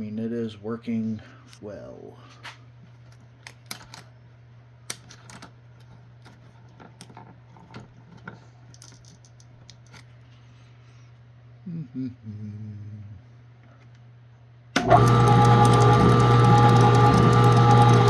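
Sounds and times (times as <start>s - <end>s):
plastic cracking in shredder: 14.8s - 18.0s
shredder motor hum: 14.8s - 18.0s.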